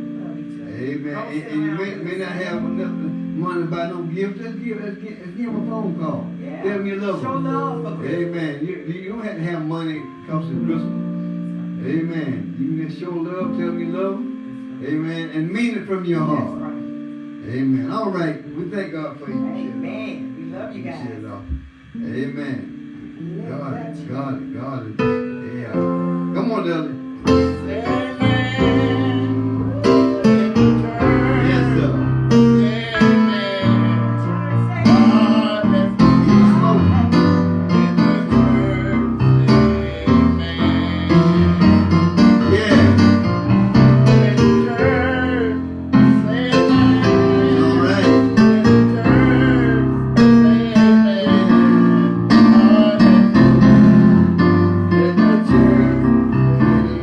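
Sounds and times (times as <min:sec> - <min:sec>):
electric keyboard chords: 0:00.0 - 0:57.0
people singing: 0:27.2 - 0:54.2, 0:54.9 - 0:57.0.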